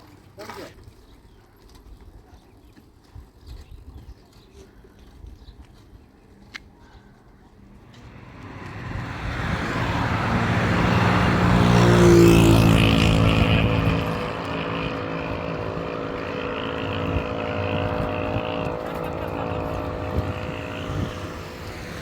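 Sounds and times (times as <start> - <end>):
vehicle engine approaching: 7.6 - 22.0.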